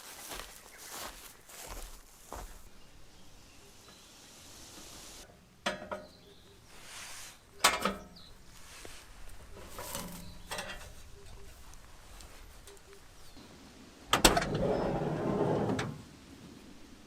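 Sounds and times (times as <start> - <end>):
soft rustling: 0.0 - 2.8, 8.4 - 13.4.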